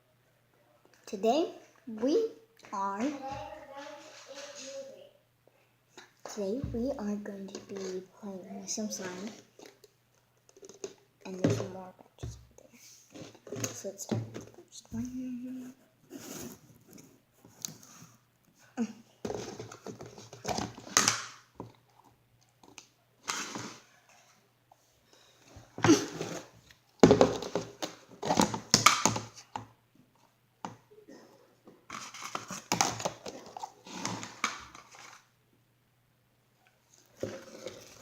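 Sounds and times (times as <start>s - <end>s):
plastic containers crinkling: 8.9s - 11.7s, 31.9s - 35.3s, 37.0s - 38.0s.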